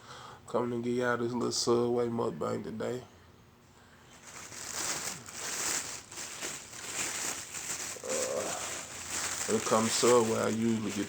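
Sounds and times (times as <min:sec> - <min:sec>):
food packaging crinkling: 0:04.1 - 0:11.0.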